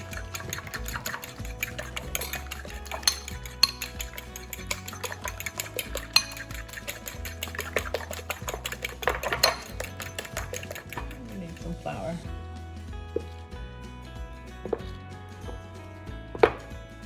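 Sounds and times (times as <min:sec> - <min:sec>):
whisk clicking and scraping bowl: 0:00.0 - 0:12.3
background music: 0:00.0 - 0:17.0.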